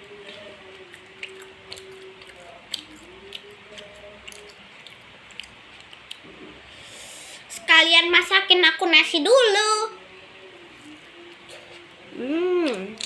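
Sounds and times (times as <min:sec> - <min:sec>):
person chewing food: 0:00.0 - 0:06.6.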